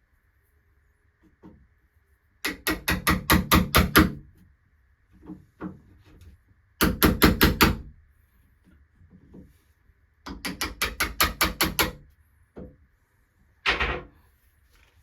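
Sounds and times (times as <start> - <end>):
hammer striking wood chisel: 2.5 - 4.2, 6.8 - 7.9, 10.3 - 12.0.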